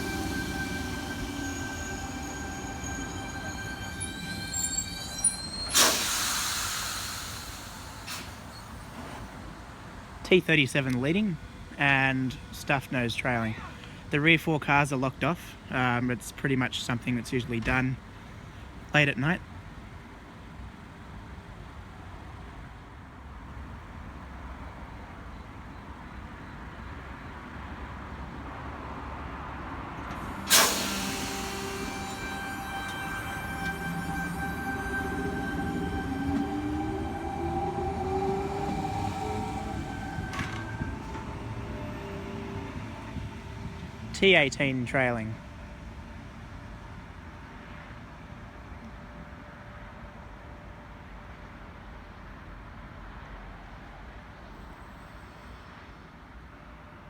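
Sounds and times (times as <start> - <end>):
air hiss burst: 0.0 - 9.1, 30.2 - 36.4
electric train whining: 0.0 - 9.4, 29.7 - 46.0.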